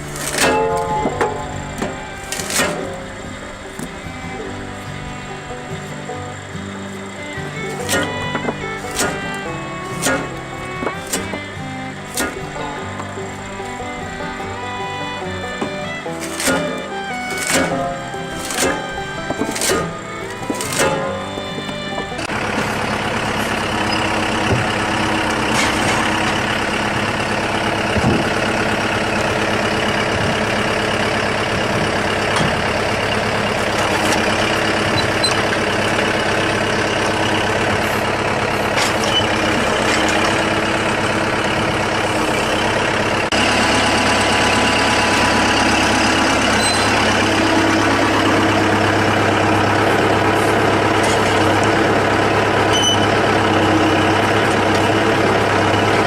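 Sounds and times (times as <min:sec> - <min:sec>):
engine hum: 0:00.0 - 0:56.0
heavy machinery running: 0:00.0 - 0:56.0
knocks and clatter: 0:15.6 - 0:42.7.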